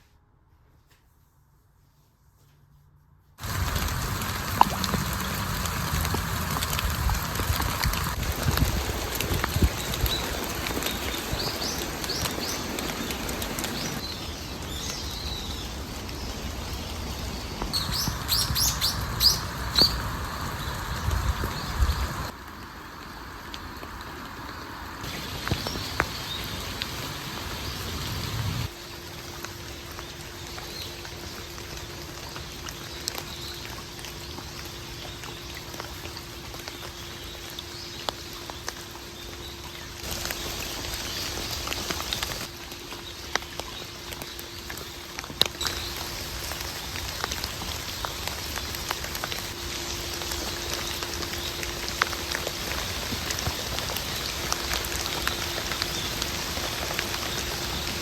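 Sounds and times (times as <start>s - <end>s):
drips ticking on surfaces: 3.4s - 14.1s, 28.7s - 58.0s
rain hissing: 3.4s - 58.0s.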